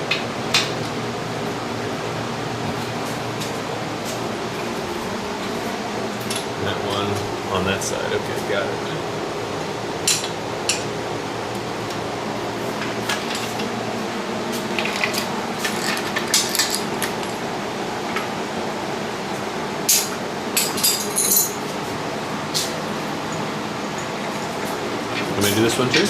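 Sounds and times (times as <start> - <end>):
room hum: 0.0 - 26.0
metal parts clinking: 14.9 - 17.3, 20.6 - 21.6.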